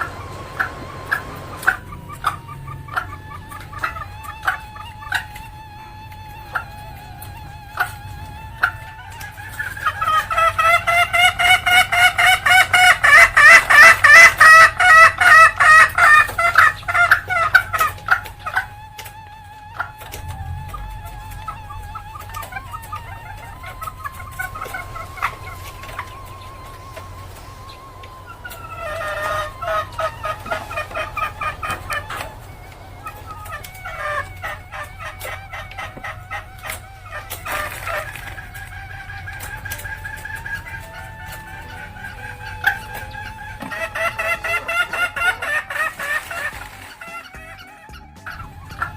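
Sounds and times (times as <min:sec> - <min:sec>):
hen cackling: 0:00.0 - 0:48.9
steady high tone: 0:18.6 - 0:37.1.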